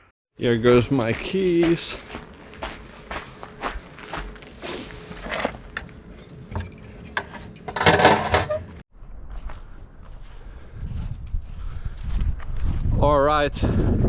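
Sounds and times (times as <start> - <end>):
keys jingling: 0.6 - 8.8
keys clattering down: 1.7 - 8.8.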